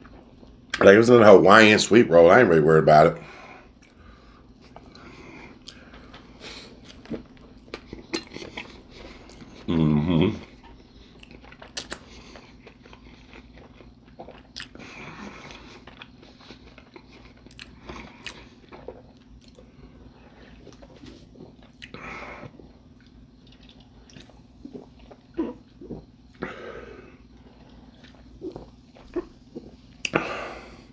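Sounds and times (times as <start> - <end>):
steady low hum: 0.0 - 30.9
person chewing and biting: 4.7 - 9.8, 10.5 - 19.7, 20.4 - 26.5.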